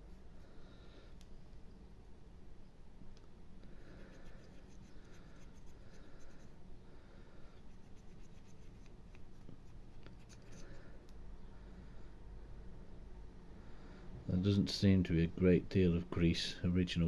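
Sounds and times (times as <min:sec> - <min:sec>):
cotton bud scratchy rubbing: 0:04.0 - 0:06.6, 0:07.6 - 0:10.8.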